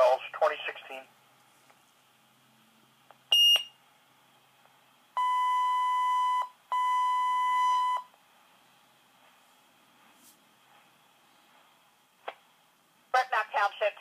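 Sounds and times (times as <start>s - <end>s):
long electronic pager beeps: 3.3s - 3.8s, 5.2s - 8.1s.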